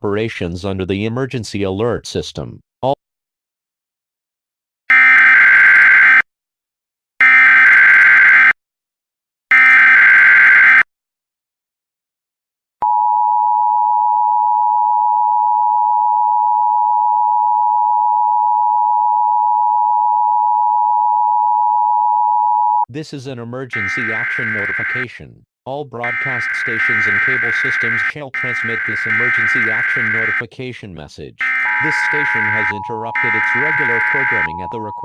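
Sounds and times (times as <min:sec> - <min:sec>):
two-tone attention signal: 0:26.0 - 0:30.4, 0:31.4 - 0:35.0
buzzy digital data tones: 0:26.1 - 0:30.4.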